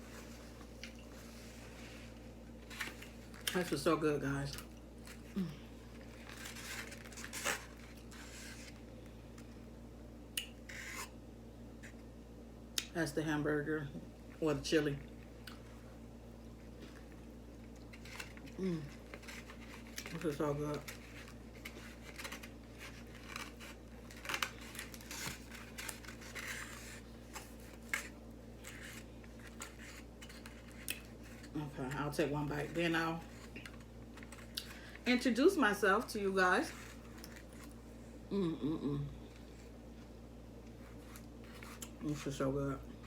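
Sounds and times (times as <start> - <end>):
faint steady hum: 0.0 - 43.0.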